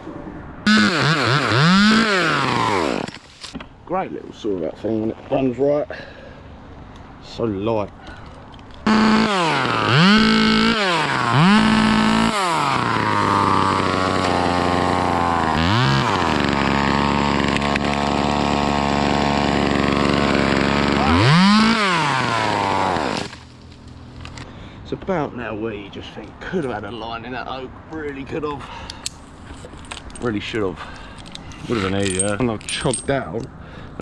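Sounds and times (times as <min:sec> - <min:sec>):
chainsaw revving: 0:00.7 - 0:03.3, 0:08.8 - 0:23.4.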